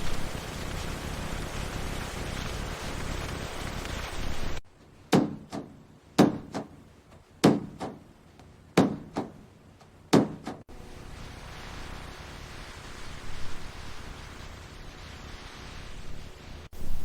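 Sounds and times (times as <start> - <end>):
steady hiss: 0.0 - 17.0
heavy thuds: 5.1 - 10.7.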